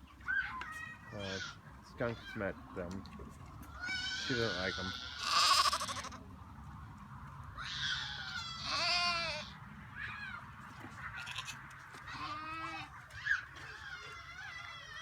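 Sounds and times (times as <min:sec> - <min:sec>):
goats bleating: 0:03.8 - 0:06.2, 0:07.6 - 0:09.6, 0:11.2 - 0:13.0.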